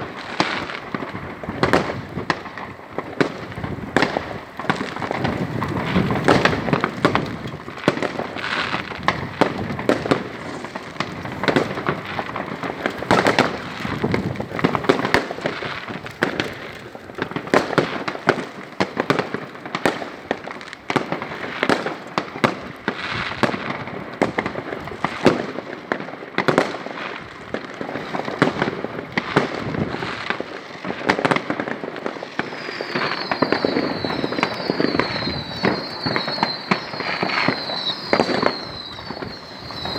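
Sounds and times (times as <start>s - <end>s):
firecracker crackle: 0.0s - 39.9s
firework bangs: 0.0s - 39.9s
high whistling: 32.4s - 39.9s.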